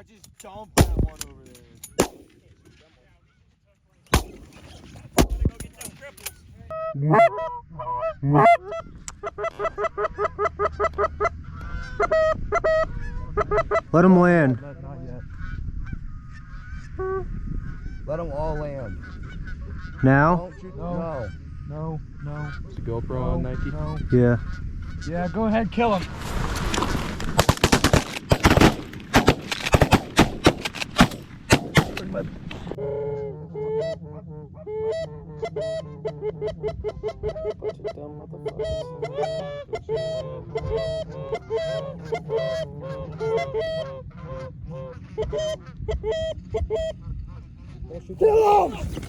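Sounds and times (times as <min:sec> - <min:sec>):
shotguns firing a rapid volley: 0:00.8 - 0:01.2, 0:04.1 - 0:05.8, 0:27.2 - 0:32.8
geese honking: 0:33.8 - 0:46.9.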